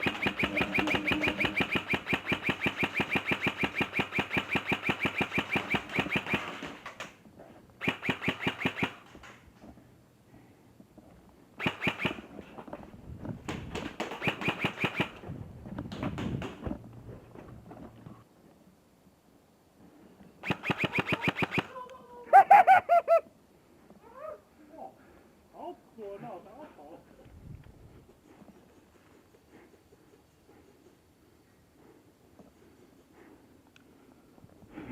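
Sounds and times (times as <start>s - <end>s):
airsoft rifle firing bursts: 0.0s - 6.8s, 7.8s - 9.0s, 11.6s - 12.3s, 14.0s - 15.2s, 20.4s - 21.7s.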